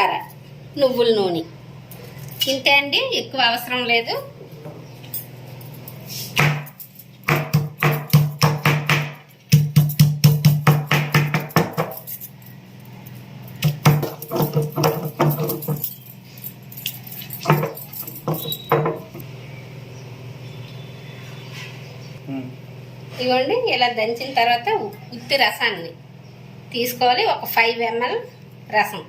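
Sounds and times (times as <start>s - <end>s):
pestle pounding in a mortar: 6.4s - 12.0s, 13.6s - 15.6s.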